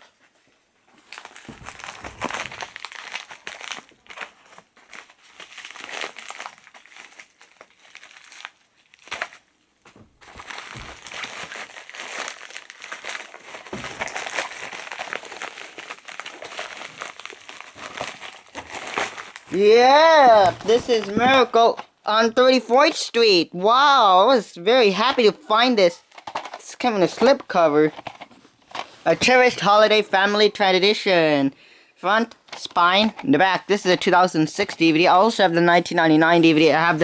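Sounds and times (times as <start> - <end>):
packaging crinkling: 1.0 - 22.0, 25.0 - 30.6.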